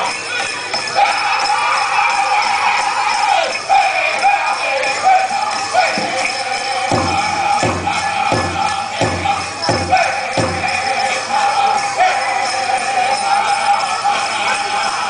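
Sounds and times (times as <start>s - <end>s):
dancers' bells jingling: 0.0s - 15.0s
group singing in high voices: 0.0s - 15.0s
big drum beats: 5.9s - 11.4s.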